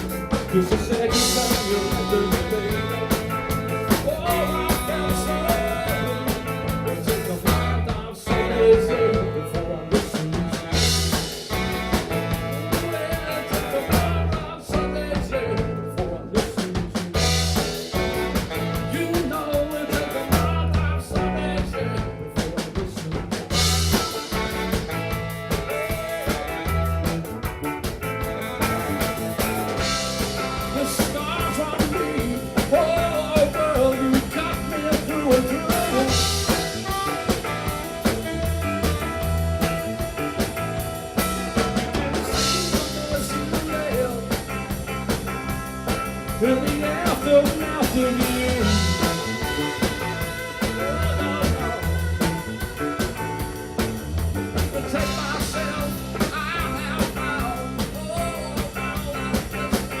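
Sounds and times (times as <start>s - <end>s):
bending lead guitar line: 0.0s - 60.0s
blues-rock band playing: 0.0s - 60.0s
drum kit with busy cymbal: 0.0s - 60.0s.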